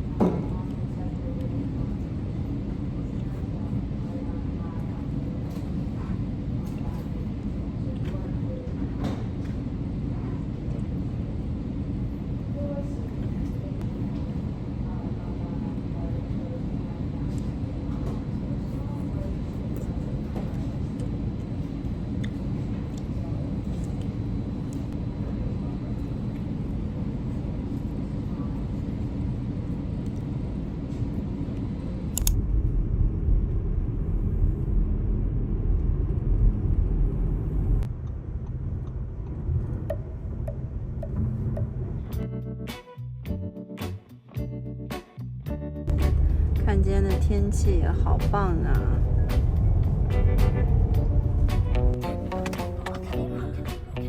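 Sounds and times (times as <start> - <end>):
sharp click: 32.2 - 32.4
vehicle rumble: 32.3 - 42.2, 45.9 - 54.0
car driving rumble: 45.9 - 53.6
faint voices: 52.0 - 54.0.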